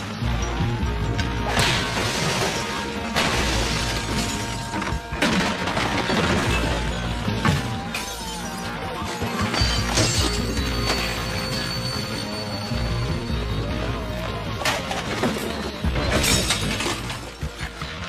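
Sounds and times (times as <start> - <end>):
dramatic orchestral music: 0.0 - 18.0
glass smashing: 1.5 - 8.5, 9.4 - 11.5, 14.7 - 17.5.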